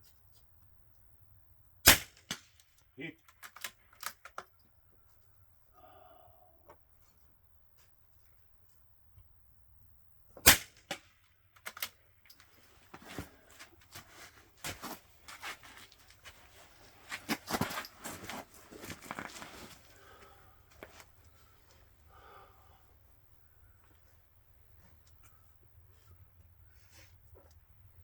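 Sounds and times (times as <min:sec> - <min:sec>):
rifle shot: 0:01.8 - 0:02.6, 0:10.4 - 0:11.2
clicking and rustling of gear: 0:02.6 - 0:04.7, 0:11.5 - 0:21.8.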